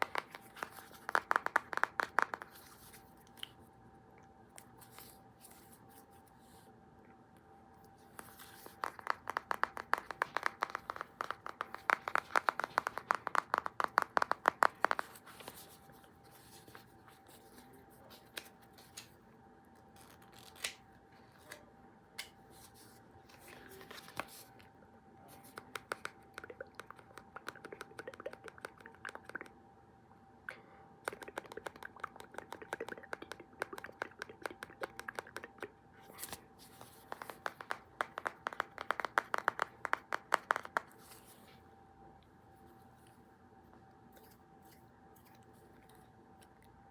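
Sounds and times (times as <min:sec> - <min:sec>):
rapid clicking and tapping: 0:00.0 - 0:02.6, 0:08.7 - 0:15.2, 0:37.0 - 0:40.9
faint steady hum: 0:00.0 - 0:46.9.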